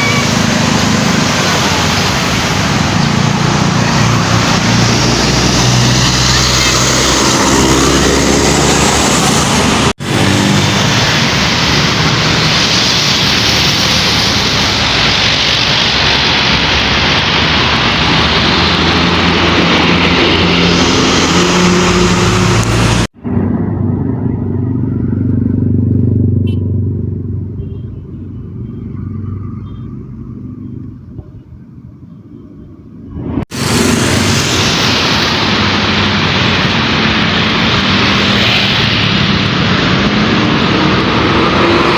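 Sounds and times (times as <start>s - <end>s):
engine and road noise rushing: 0.0s - 41.9s
quieter engine humming: 19.8s - 35.1s.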